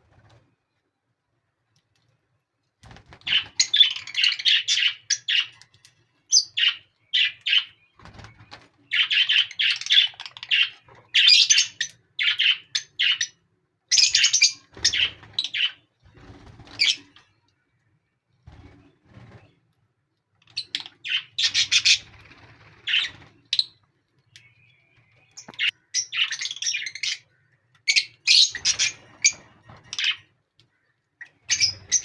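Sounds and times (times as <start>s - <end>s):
parrots chirping: 8.9s - 15.8s, 20.5s - 22.1s, 22.8s - 23.8s, 25.3s - 27.3s, 27.9s - 30.3s, 31.5s - 32.0s.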